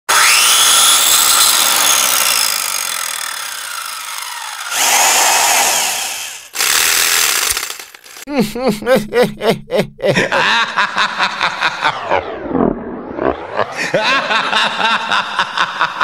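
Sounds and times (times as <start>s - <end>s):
power tool motor whine: 0.1s - 8.2s.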